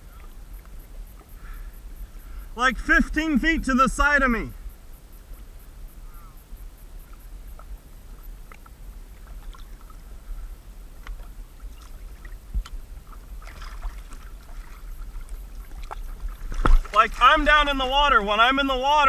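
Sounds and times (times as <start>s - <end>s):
low wind rumble on microphone: 4.5s - 18.8s
paddle splashes and drips: 7.0s - 19.0s.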